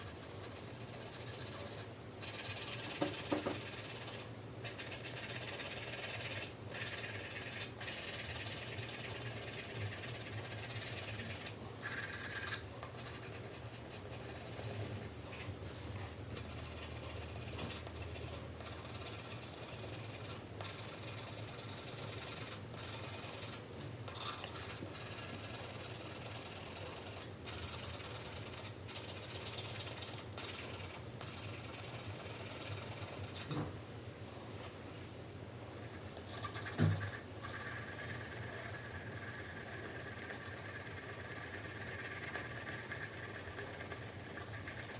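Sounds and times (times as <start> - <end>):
pencil shading on paper: 0.0 - 15.1, 16.4 - 23.6, 24.2 - 33.4, 36.4 - 44.9.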